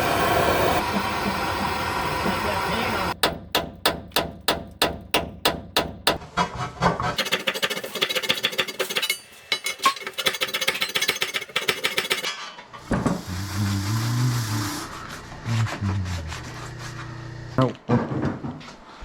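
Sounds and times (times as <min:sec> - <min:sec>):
tool hammering and rattling: 0:03.2 - 0:13.2
hiss: 0:12.9 - 0:15.3
low hum shifting in pitch: 0:13.2 - 0:17.6.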